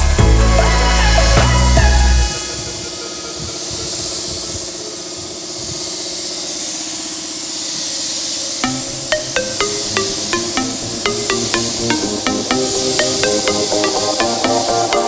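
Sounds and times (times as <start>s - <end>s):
held synth note: 8.6s - 15.0s.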